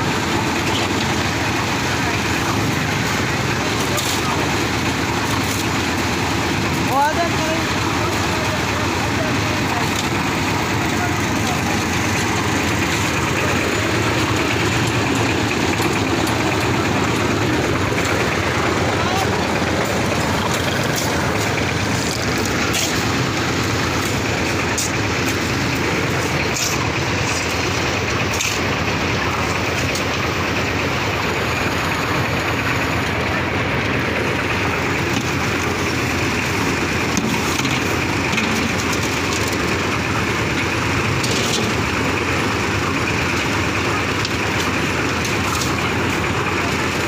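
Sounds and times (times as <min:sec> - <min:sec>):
engine running loudly: 0:00.0 - 0:47.0.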